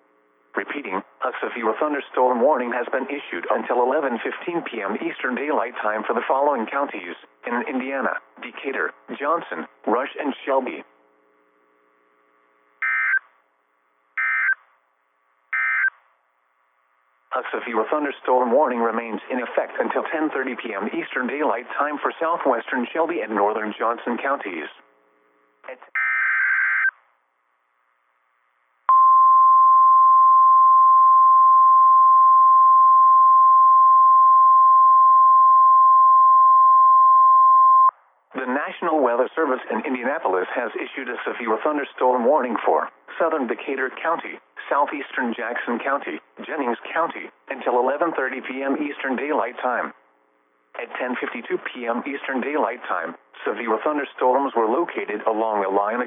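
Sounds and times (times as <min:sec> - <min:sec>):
steady warning alarm tone: 0:12.8 - 0:13.2, 0:14.2 - 0:14.6, 0:15.5 - 0:15.9, 0:26.0 - 0:26.9.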